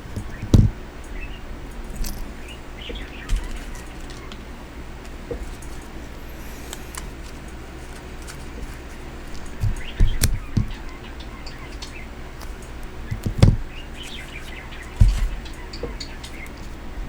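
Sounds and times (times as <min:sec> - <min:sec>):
knocks of objects handled: 0:00.0 - 0:00.9, 0:01.8 - 0:04.2, 0:08.6 - 0:11.0, 0:12.4 - 0:14.2, 0:14.9 - 0:16.7
pet birds chirping: 0:00.0 - 0:04.7, 0:08.6 - 0:17.0.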